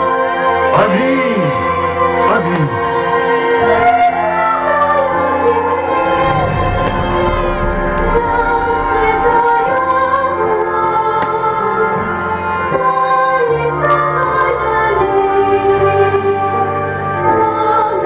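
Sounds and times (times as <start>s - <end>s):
person singing long notes: 0.0s - 18.0s
sustained accompanying chords: 0.0s - 18.0s.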